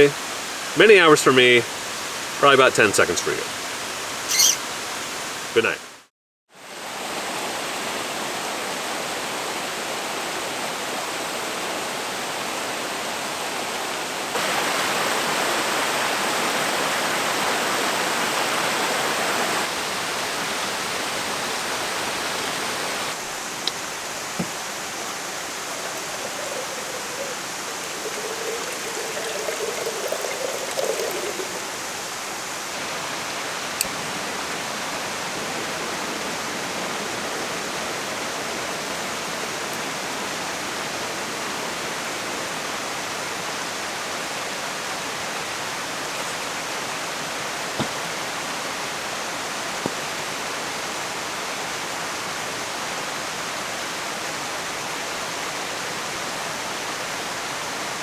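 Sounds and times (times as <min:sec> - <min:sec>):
waterfall rushing: 0:06.8 - 0:58.0.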